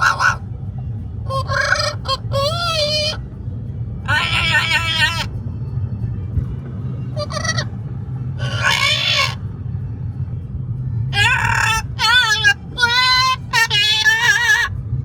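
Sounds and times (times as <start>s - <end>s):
parrot calling: 0.0s - 0.5s, 1.3s - 3.2s, 4.0s - 5.4s, 7.2s - 7.7s, 8.4s - 9.4s, 11.1s - 14.7s
car rumbling on road: 0.0s - 15.0s.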